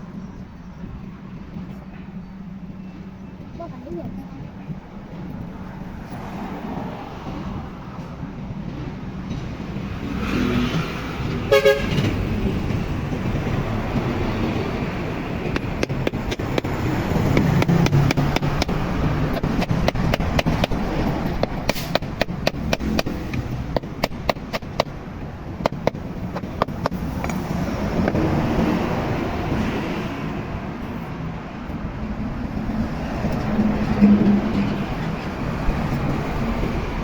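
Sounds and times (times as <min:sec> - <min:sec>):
steady rumbling: 0:10.8 - 0:29.6
sharp irregular clicks: 0:15.5 - 0:25.0.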